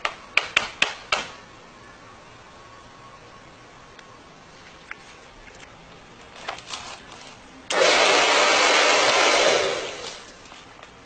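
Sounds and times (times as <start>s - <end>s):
hair dryer blowing: 7.7s - 10.2s.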